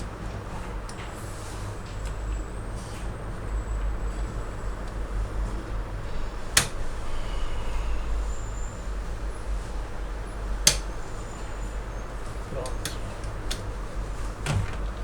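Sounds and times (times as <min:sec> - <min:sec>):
steady low hum: 0:00.0 - 0:15.0
plastic parts snapping: 0:10.6 - 0:10.9.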